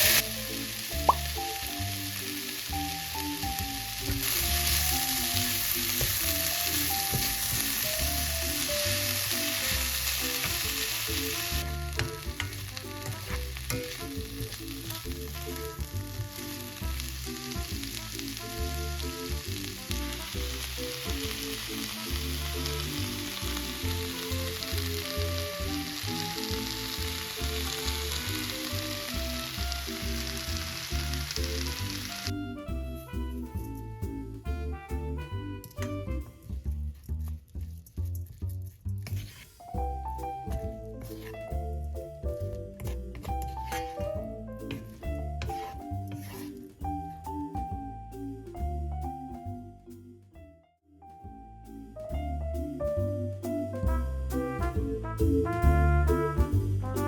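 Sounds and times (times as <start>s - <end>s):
potatoes sizzling in a frying pan: 0.0s - 32.3s
background music: 0.0s - 37.3s, 39.2s - 57.0s.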